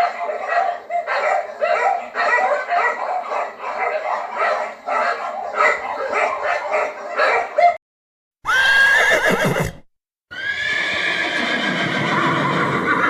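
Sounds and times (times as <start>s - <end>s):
dog barking and yapping: 0.0s - 7.8s.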